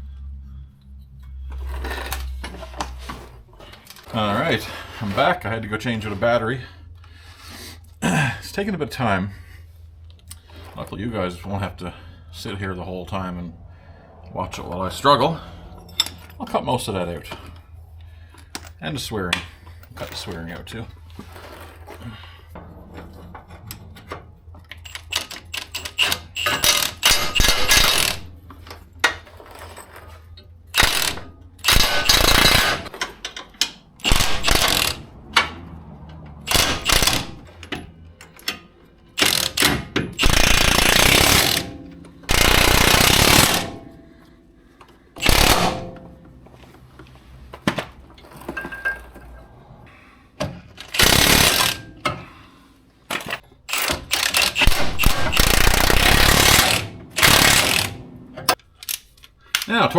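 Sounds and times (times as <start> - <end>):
impact wrench hammering bolts: 22.8 - 44.3, 45.2 - 46.4, 50.4 - 52.4, 53.1 - 59.0.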